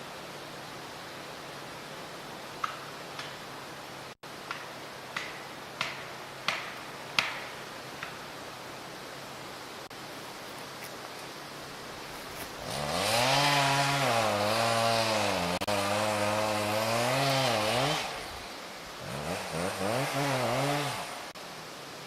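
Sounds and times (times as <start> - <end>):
chainsaw cutting tree: 12.4 - 21.4.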